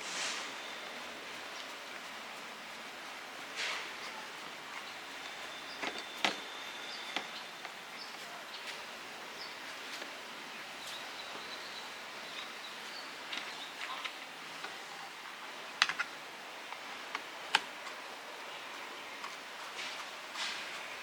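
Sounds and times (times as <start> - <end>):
outdoor background hiss: 0.0 - 21.0
faint high chirping: 4.1 - 8.7.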